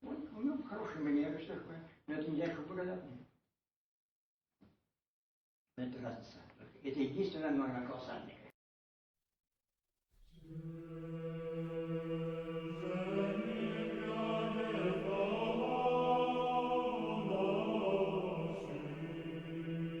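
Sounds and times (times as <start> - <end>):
choir chanting: 10.3 - 20.0.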